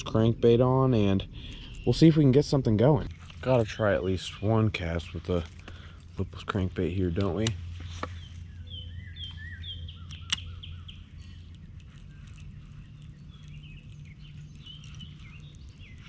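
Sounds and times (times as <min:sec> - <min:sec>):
birds chirping: 0:00.0 - 0:16.0
low hum: 0:00.0 - 0:16.0
sharp click: 0:10.1 - 0:10.7.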